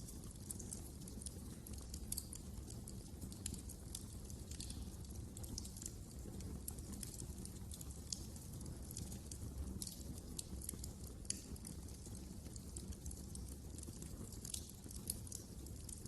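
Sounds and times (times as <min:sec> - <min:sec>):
low rumble of flames: 0:00.0 - 0:16.0
wood fire crackling and popping: 0:00.0 - 0:16.0.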